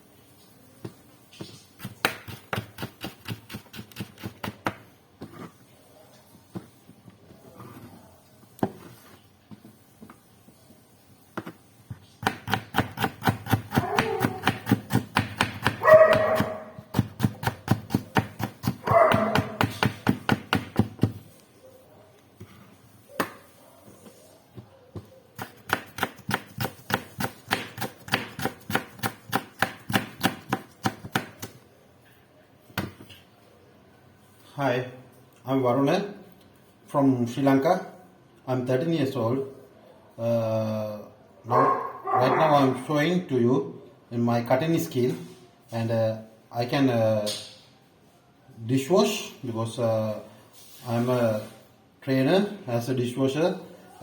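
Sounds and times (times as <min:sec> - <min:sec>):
knife chopping on cutting board: 0:01.8 - 0:05.4, 0:12.2 - 0:21.2, 0:25.4 - 0:31.6
dog barking: 0:13.7 - 0:14.4, 0:15.8 - 0:16.8, 0:18.8 - 0:19.6, 0:41.5 - 0:42.8.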